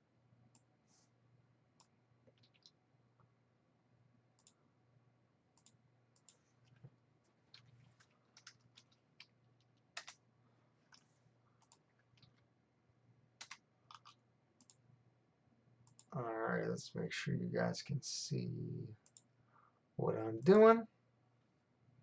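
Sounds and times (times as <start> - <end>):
keyboard and mouse clicks: 1.8 - 2.8, 4.4 - 4.6, 5.6 - 6.9, 7.5 - 10.2, 11.6 - 12.4, 13.4 - 14.8, 15.8 - 16.2.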